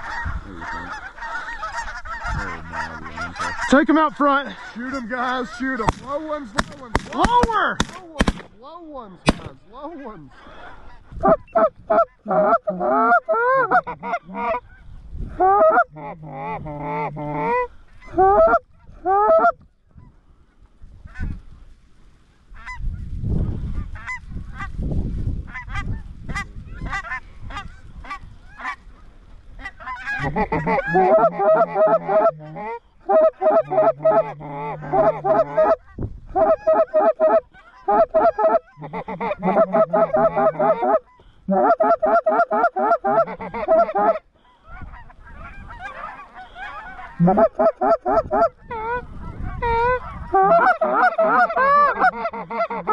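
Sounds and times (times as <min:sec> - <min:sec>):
wind rumble on microphone: 0:00.0 - 0:03.7, 0:10.9 - 0:12.3, 0:14.5 - 0:15.4, 0:18.0 - 0:30.9, 0:35.8 - 0:36.4, 0:44.7 - 0:46.0, 0:48.0 - 0:50.4
geese honking: 0:00.0 - 0:08.5, 0:10.4 - 0:14.8, 0:15.4 - 0:19.6, 0:25.5 - 0:28.8, 0:29.6 - 0:52.9.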